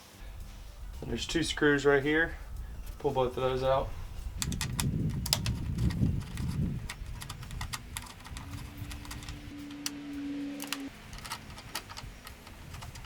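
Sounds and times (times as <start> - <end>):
low rumbling handling noise: 2.9 - 13.0
screwdriver clicks and screws rattling: 4.4 - 9.9, 10.6 - 13.0
steady low hum: 5.7 - 13.0.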